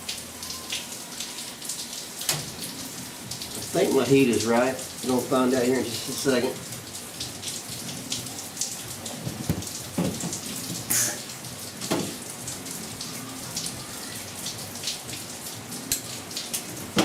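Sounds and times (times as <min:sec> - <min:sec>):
heavy rain pattering: 0:00.0 - 0:17.0
dull knocks: 0:09.2 - 0:10.4.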